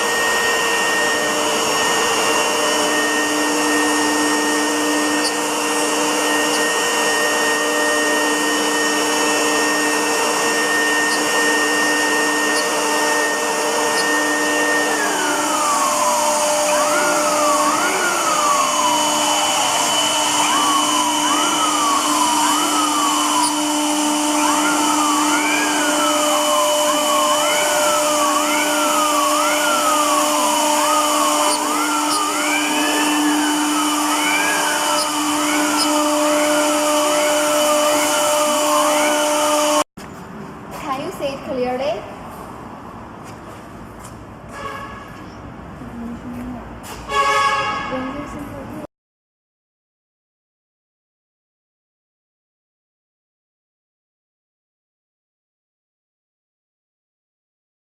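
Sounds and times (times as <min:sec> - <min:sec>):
drive motors whining in sweeps: 0:00.0 - 0:39.8
router spindle whine: 0:00.0 - 0:39.9.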